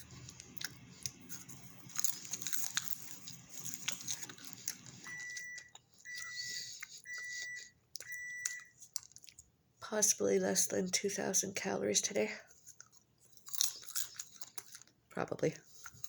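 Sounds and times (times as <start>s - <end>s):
scattered clicks and crackles: 0.0s - 5.8s
appliance beeper beeping: 5.0s - 8.7s.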